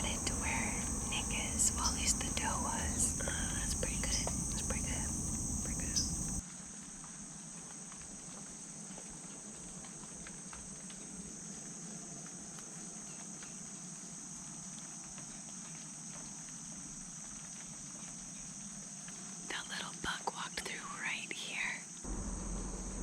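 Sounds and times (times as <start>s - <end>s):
faint ticks: 0.0s - 6.4s, 22.1s - 23.0s
insects chirring in woods: 0.0s - 6.4s, 22.1s - 23.0s.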